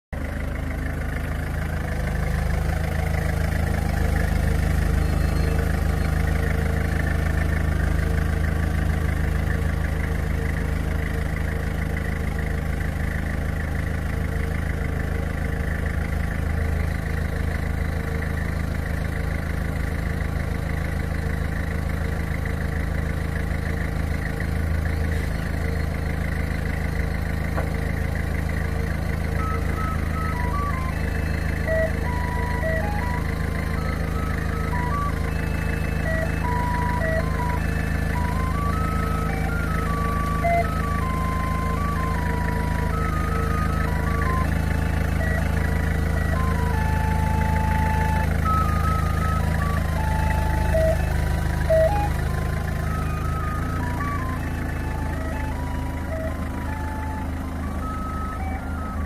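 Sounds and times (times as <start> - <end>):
forklift engine humming: 0.1 - 59.0.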